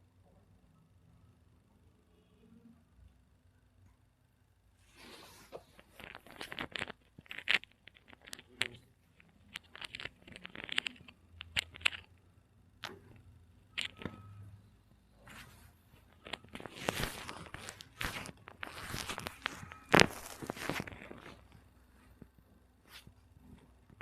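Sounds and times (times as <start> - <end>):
cloth rustling and scraping: 4.8 - 8.8, 15.2 - 22.2.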